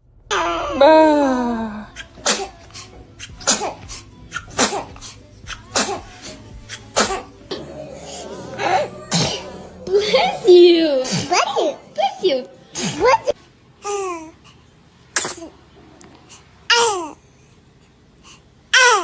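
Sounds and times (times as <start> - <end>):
baby vocalizing: 0.3 - 9.8
baby sneezing: 1.9 - 2.6, 3.2 - 7.3, 9.1 - 9.6, 11.0 - 11.6, 12.8 - 13.3, 15.1 - 15.5.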